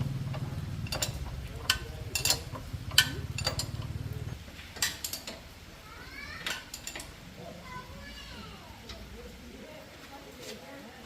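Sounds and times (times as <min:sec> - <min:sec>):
metal tools clinking: 0:00.3 - 0:04.1, 0:06.4 - 0:07.1.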